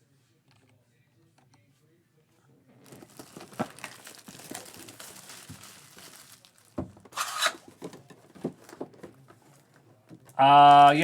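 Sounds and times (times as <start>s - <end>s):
plastic wrapping crinkling: 2.7s - 11.0s
plastic wrapping ripping: 2.8s - 8.0s.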